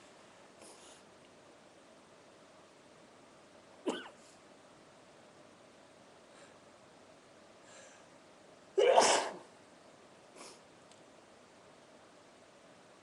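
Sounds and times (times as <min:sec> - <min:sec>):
person sneezing: 0:03.9 - 0:04.2, 0:08.8 - 0:09.5.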